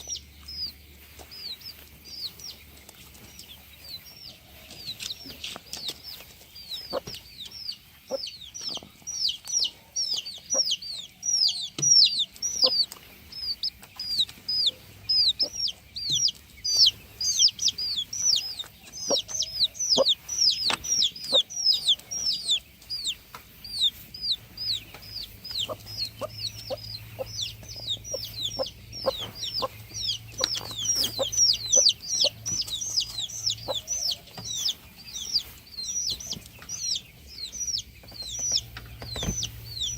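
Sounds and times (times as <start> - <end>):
chickens cheeping: 0.0 - 39.9.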